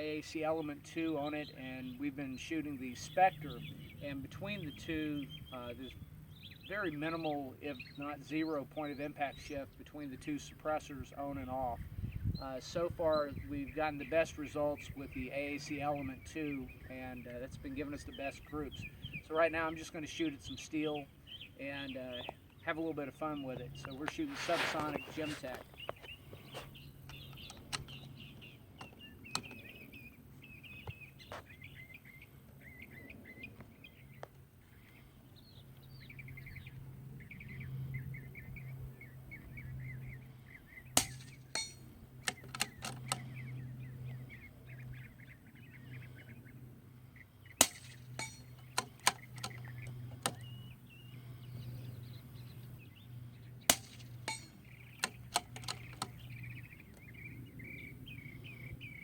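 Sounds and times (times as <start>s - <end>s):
birds chirping: 0.0s - 59.0s
steady low hum: 0.0s - 59.0s
rifle bolt clicks: 41.0s - 43.2s, 53.7s - 56.2s.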